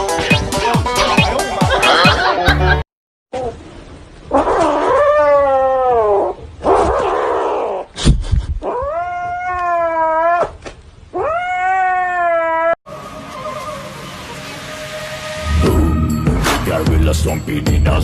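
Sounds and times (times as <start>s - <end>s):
cat yowling: 4.3s - 7.6s, 8.6s - 14.2s.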